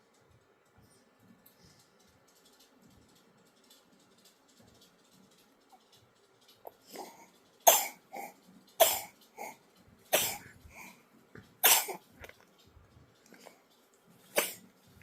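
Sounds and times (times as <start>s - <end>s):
baby coughing: 6.9s - 10.7s, 11.6s - 12.1s, 14.3s - 14.6s.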